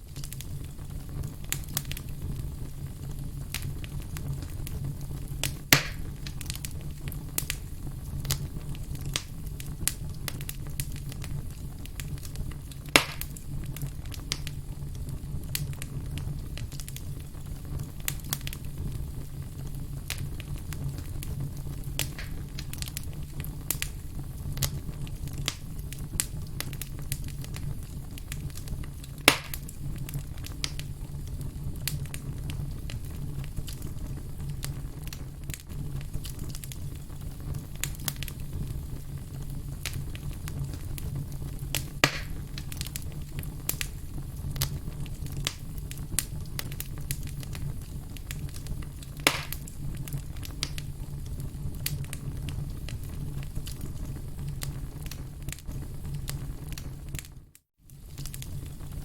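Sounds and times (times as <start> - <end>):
loud fire pops: 0.0 - 59.0
wood fire crackling: 0.0 - 59.0.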